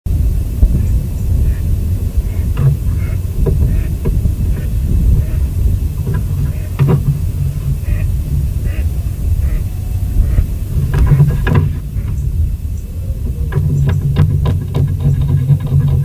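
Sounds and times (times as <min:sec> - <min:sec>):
low rumble: 0:00.0 - 0:16.0.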